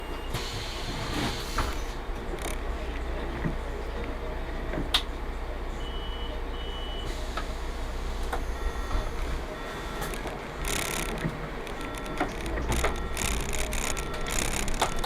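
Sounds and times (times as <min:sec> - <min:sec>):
bus engine running: 0:00.0 - 0:15.0
clicks: 0:01.6 - 0:03.6, 0:08.2 - 0:15.0
short electronic beeps: 0:05.8 - 0:07.7, 0:08.3 - 0:15.0.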